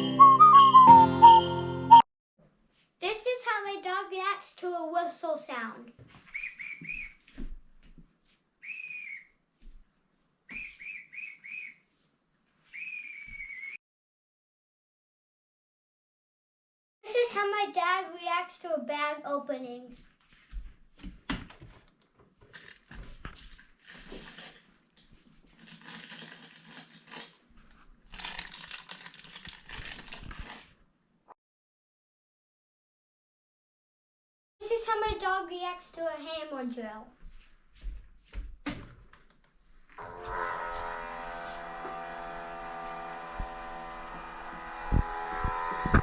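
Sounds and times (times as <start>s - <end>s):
high-pitched whistles: 0.0s - 2.1s, 8.6s - 9.3s, 10.5s - 11.8s, 12.8s - 13.8s
bag crinkling and rustling: 22.5s - 30.8s.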